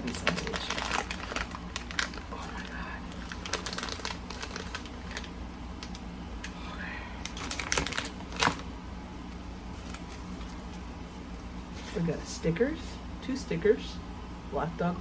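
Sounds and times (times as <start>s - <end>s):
package clicks and rustles: 0.0s - 6.1s, 7.2s - 8.7s, 9.8s - 10.8s
steady low hum: 0.0s - 15.0s.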